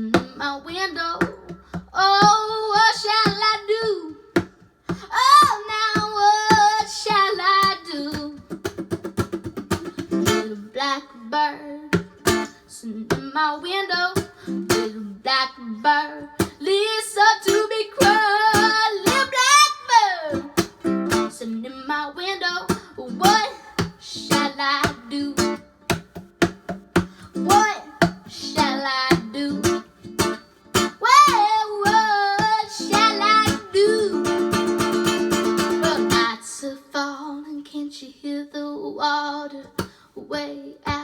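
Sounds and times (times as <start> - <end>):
girl singing: 0.0 - 41.0
strummed acoustic string instrument: 4.4 - 10.6, 11.9 - 13.3, 14.2 - 15.1, 17.4 - 19.5, 20.2 - 21.6, 22.7 - 36.5.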